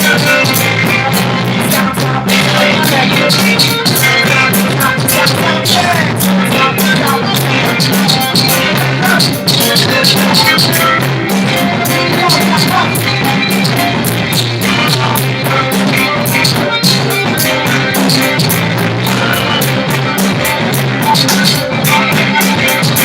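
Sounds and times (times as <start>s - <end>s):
bass line: 0.0s - 23.0s
rock band playing: 0.0s - 23.0s.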